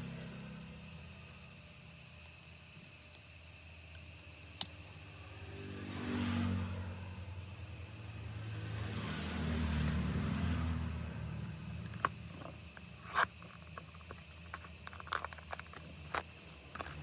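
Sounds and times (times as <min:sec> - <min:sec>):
insects chirring: 0:00.0 - 0:17.0
passing vehicle engine: 0:05.1 - 0:12.4.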